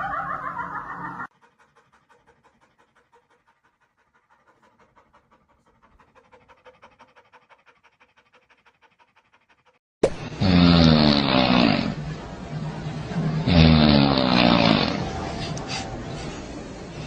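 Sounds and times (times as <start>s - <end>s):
rapid panting: 1.3s - 9.8s.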